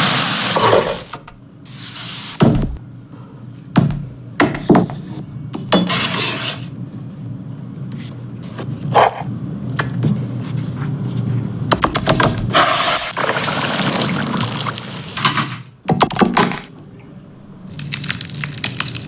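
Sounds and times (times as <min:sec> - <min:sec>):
steady low hum: 0:16.7 - 0:18.8.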